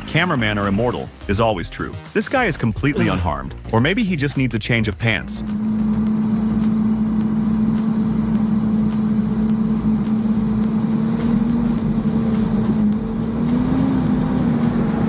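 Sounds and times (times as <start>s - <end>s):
engine running steadily: 3.0s - 15.0s.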